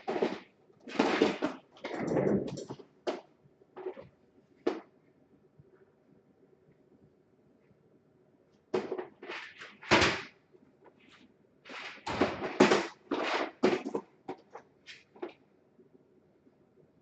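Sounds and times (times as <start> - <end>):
parts clattering and rustling: 8.8 - 15.4.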